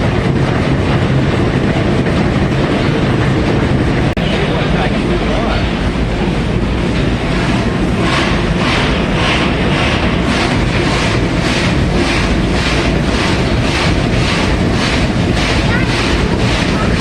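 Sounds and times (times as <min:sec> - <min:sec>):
rhythmic steam hiss: 0:00.0 - 0:17.0
steam machinery rumbling: 0:00.0 - 0:17.0.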